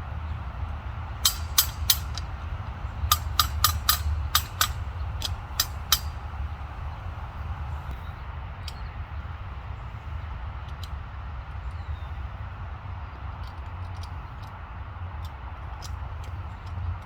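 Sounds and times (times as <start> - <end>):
steady low rumble: 0.0 - 17.0
sharp metallic clicks and knocks: 1.2 - 6.4.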